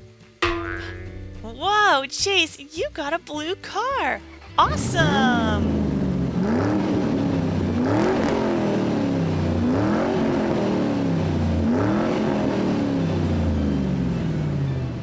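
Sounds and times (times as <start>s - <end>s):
car engine revving: 4.4s - 15.0s.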